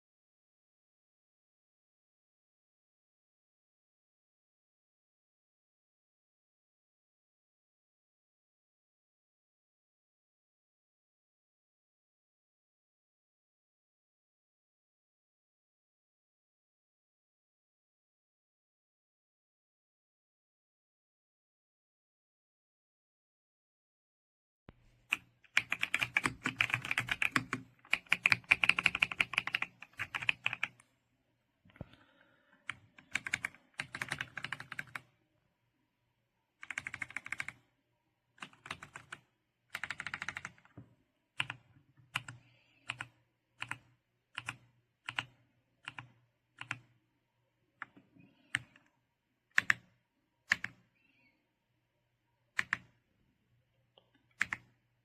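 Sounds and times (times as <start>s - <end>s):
mechanical keyboard typing: 25.1s - 30.8s, 32.7s - 35.0s, 36.6s - 37.6s, 38.4s - 40.7s, 41.4s - 46.9s, 49.5s - 49.9s, 50.5s - 50.8s, 52.6s - 52.9s, 54.3s - 54.7s.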